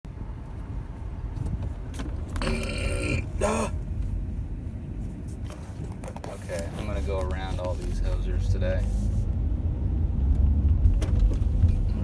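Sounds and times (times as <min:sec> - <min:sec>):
car road rumble: 0:00.1 - 0:12.0
person belching: 0:02.4 - 0:03.8.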